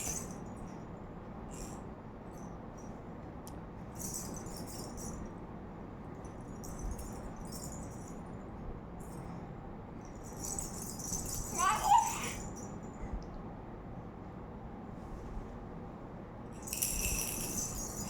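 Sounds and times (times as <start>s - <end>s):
jingling rattle shaken: 0.0s - 0.4s, 1.5s - 1.8s, 3.9s - 5.3s, 6.2s - 8.3s, 10.0s - 13.0s, 16.6s - 18.0s
steady low hum: 0.0s - 18.0s.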